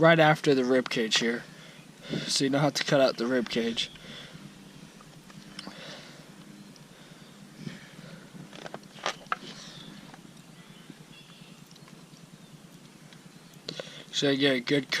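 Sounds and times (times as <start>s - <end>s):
small clicks: 8.4s - 13.9s.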